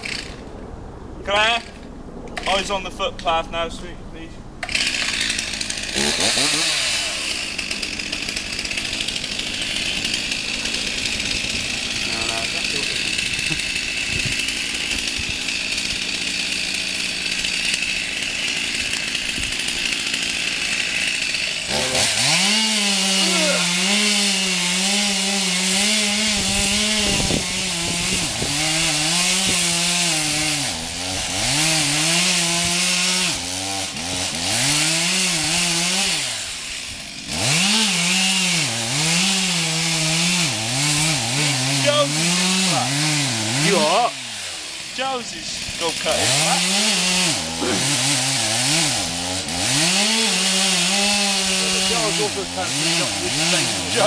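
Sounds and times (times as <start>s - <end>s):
chainsaw cutting wood: 0.0s - 0.4s, 4.6s - 54.0s.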